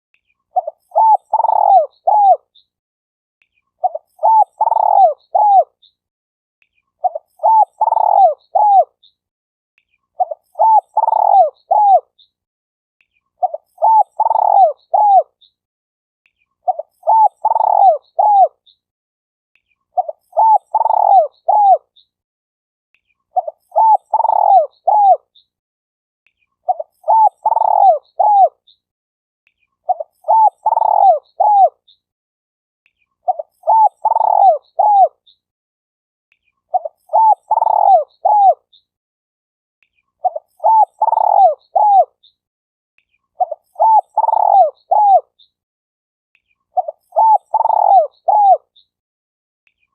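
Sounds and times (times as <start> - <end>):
dove cooing: 0.6 - 2.4, 3.8 - 5.7, 7.0 - 8.9, 10.2 - 12.1, 13.4 - 15.3, 16.7 - 18.5, 20.0 - 21.8, 23.4 - 25.2, 26.7 - 28.6, 29.9 - 31.8, 33.3 - 35.2, 36.7 - 38.6, 40.2 - 42.1, 43.4 - 45.3, 46.8 - 48.6.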